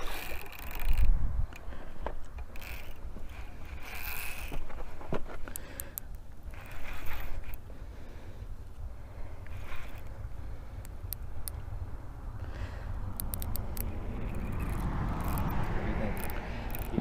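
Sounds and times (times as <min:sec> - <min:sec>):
fishing reel rasping: 0:00.0 - 0:04.9, 0:05.5 - 0:08.4, 0:09.2 - 0:11.6, 0:12.6 - 0:17.0
steady low rumble: 0:07.6 - 0:17.0
sharp ticks: 0:09.4 - 0:11.7, 0:13.1 - 0:17.0.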